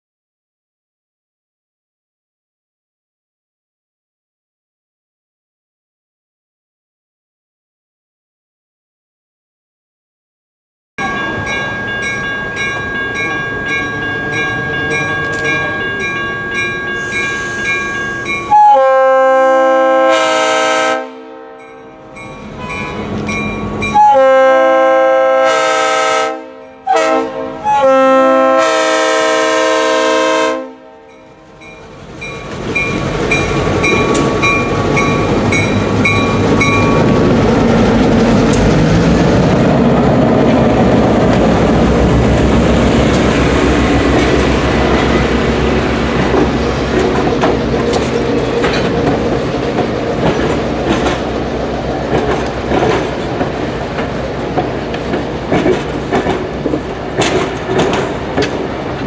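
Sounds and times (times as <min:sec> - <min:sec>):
train bell ringing: 0:11.0 - 0:18.7, 0:21.6 - 0:24.2, 0:31.1 - 0:37.2, 0:43.1 - 0:51.0
locomotive air horn blasts: 0:18.5 - 0:22.2, 0:23.9 - 0:31.2
train wheels clacking on rails: 0:31.6 - 0:59.0.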